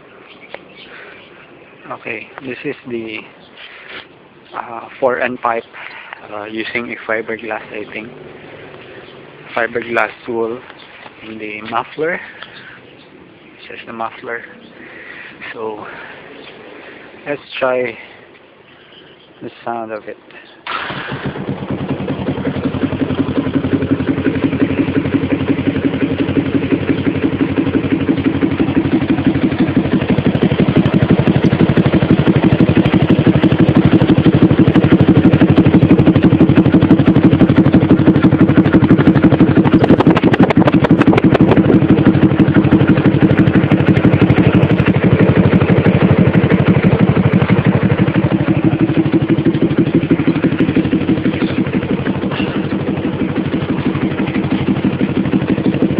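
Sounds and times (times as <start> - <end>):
motorcycle engine running: 6.2 - 17.2, 20.8 - 55.9.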